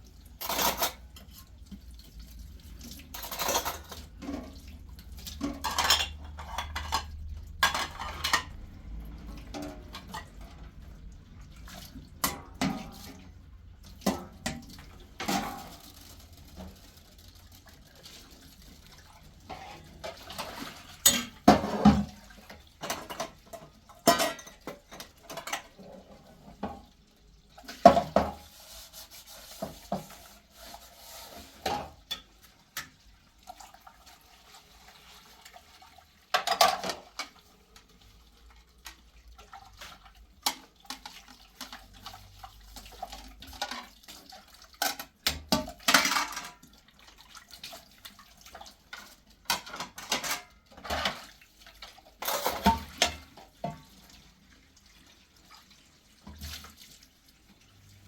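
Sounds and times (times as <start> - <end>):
dishes and utensils clinking: 0.4 - 1.5, 3.0 - 8.6, 19.5 - 22.2, 22.8 - 26.8, 36.3 - 37.4, 44.7 - 46.7, 48.9 - 51.3, 52.2 - 53.9.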